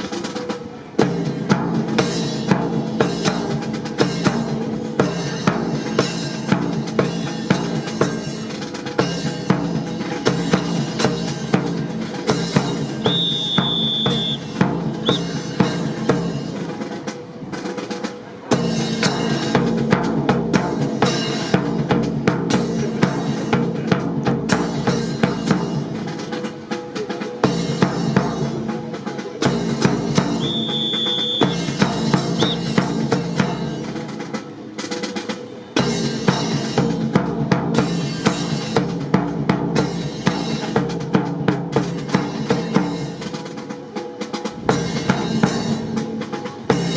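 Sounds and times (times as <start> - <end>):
drum-heavy percussion music: 0.0 - 46.9.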